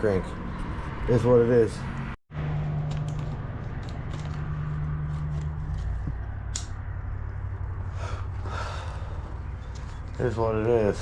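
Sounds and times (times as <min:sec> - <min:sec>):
hand-crank wire stripper clicking: 0:06.5 - 0:06.8.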